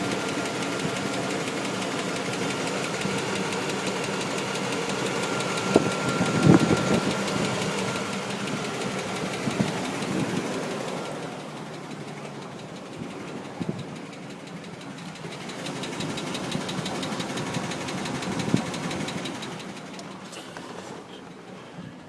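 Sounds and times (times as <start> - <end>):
engine running with rapid knock: 0.0 - 22.0
loud engine thumps: 3.0 - 10.6.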